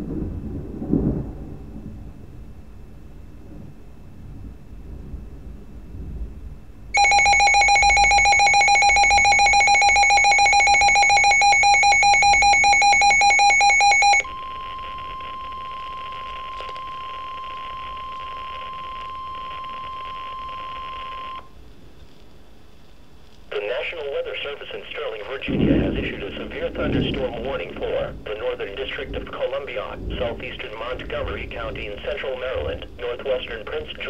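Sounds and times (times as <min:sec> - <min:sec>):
pulsing electronic alarm beep: 0:07.0 - 0:21.4
steady warning alarm tone: 0:07.0 - 0:21.5
radio hiss: 0:23.4 - 0:34.0.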